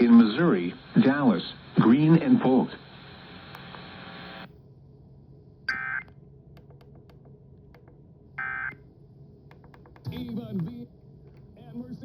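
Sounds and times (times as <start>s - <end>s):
broadcast hiss: 0.0s - 4.5s.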